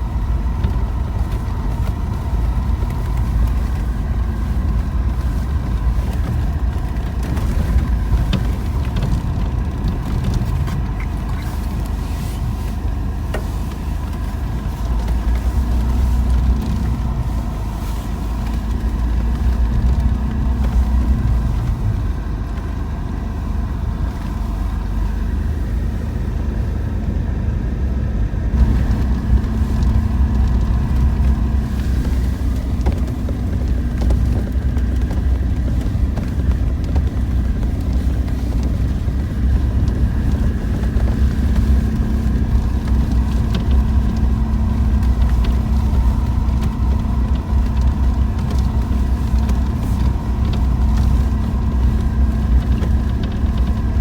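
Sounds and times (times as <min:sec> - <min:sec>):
car engine and tyre rumble: 0:00.0 - 0:54.0.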